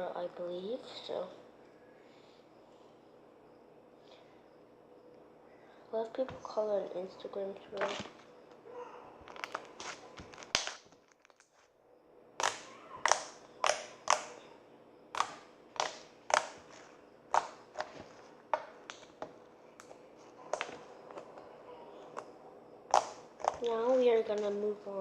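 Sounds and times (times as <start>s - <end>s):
slime popping and clicking: 12.4s - 14.4s, 15.1s - 18.0s, 22.9s - 24.5s.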